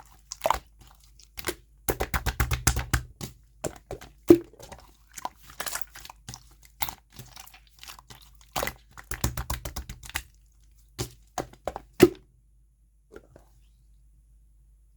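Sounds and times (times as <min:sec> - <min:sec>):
slime crackling and popping: 0:05.3 - 0:10.3.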